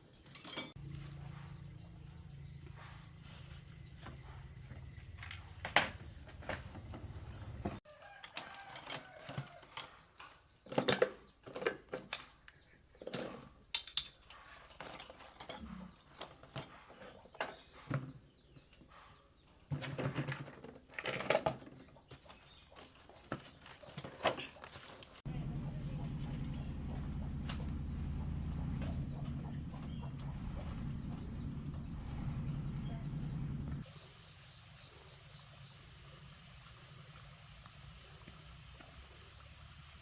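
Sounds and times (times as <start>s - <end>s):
chickens clucking: 24.4s - 33.9s
steady low hum: 25.3s - 40.0s.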